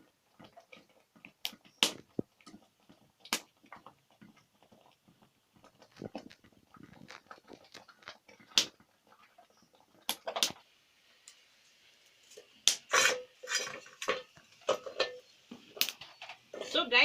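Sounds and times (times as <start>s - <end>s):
wooden stick scraping a pot: 12.3s - 15.3s.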